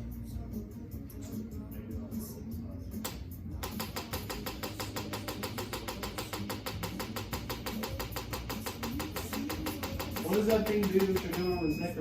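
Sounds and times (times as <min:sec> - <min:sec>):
rapid electronic clicking: 0:03.1 - 0:11.6.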